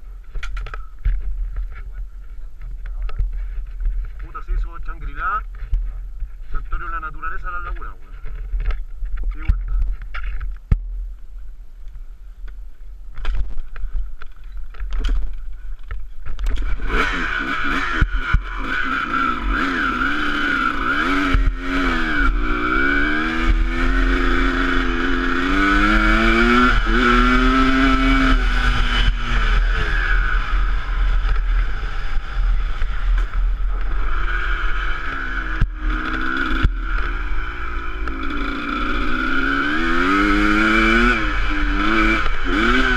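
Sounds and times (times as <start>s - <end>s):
motorcycle engine revving: 14.6s - 42.9s.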